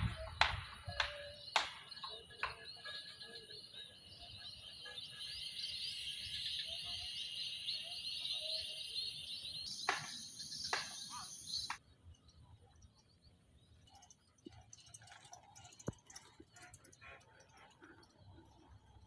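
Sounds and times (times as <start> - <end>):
insect drone: 0.0 - 12.3
small birds chirping: 0.0 - 19.0.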